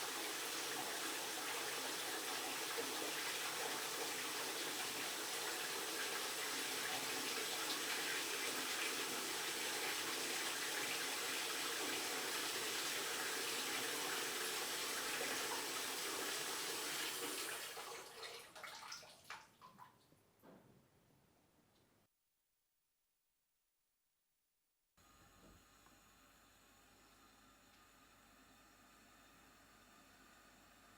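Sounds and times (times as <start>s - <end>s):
tap water running into sink: 0.0s - 20.0s
water drips: 18.0s - 20.1s.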